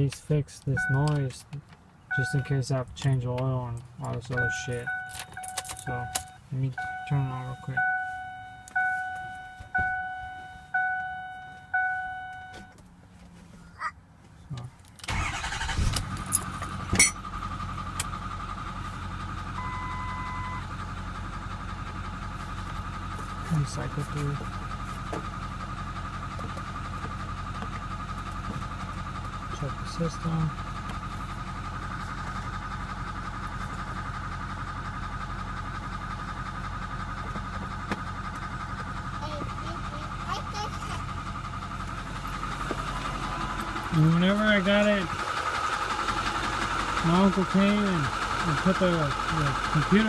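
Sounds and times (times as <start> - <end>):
diesel engine cranking and idling: 0.0 - 50.0
short electronic beep: 0.8 - 1.0, 2.1 - 2.5, 4.4 - 12.7, 19.6 - 20.6
rapid even engine ticking: 15.1 - 50.0.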